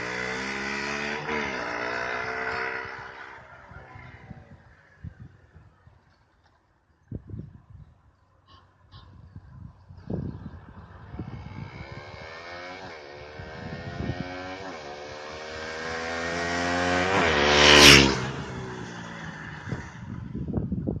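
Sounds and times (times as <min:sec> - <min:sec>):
motorcycle accelerating past: 0:00.0 - 0:05.0, 0:10.2 - 0:20.6.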